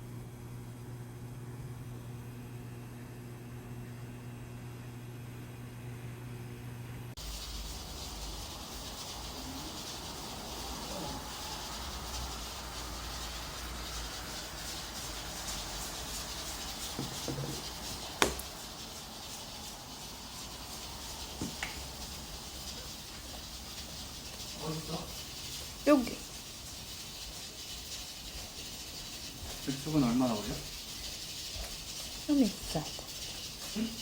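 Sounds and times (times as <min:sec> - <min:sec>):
low electrical hum: 0:00.0 - 0:34.0
steady high hiss: 0:07.2 - 0:34.0.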